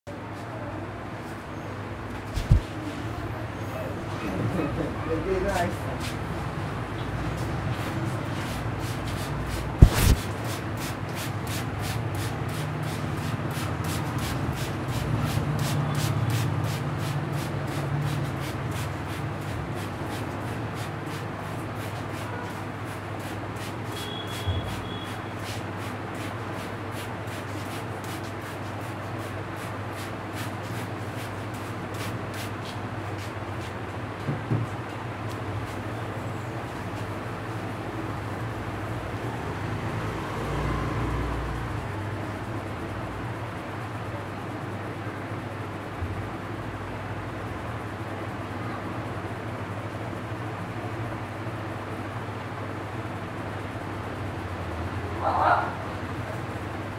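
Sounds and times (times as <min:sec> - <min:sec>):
hands rubbing hair: 0:02.3 - 0:02.7, 0:08.4 - 0:33.8
sharp slap: 0:09.8 - 0:10.3.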